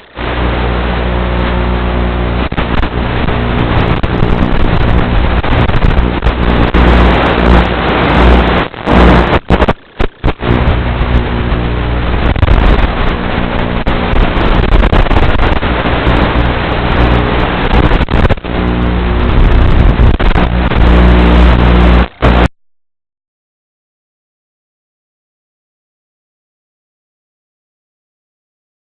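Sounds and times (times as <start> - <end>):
wind buffeting microphone: 0.0 - 22.5.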